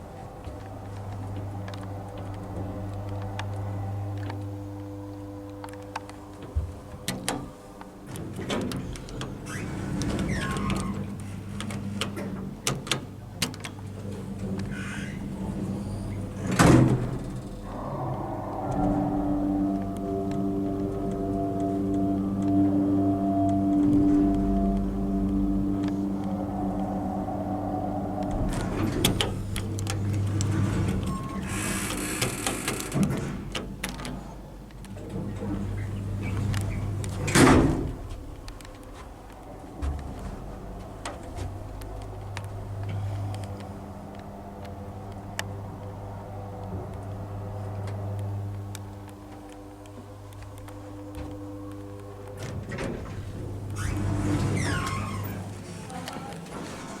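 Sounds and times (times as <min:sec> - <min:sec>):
lift pump motor hum: 0:00.0 - 0:57.0
short falling squeal: 0:14.8 - 0:32.2, 0:53.1 - 0:55.6.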